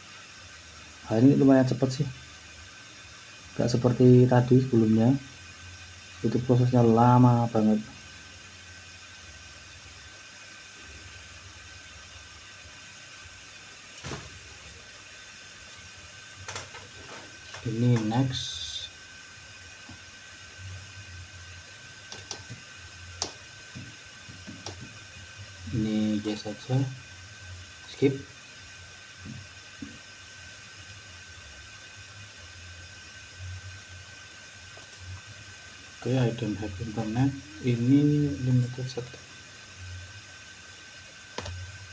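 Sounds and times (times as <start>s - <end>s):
low background hiss and hum: 0.0s - 41.9s
faint high whine: 13.9s - 30.2s, 30.8s - 41.9s.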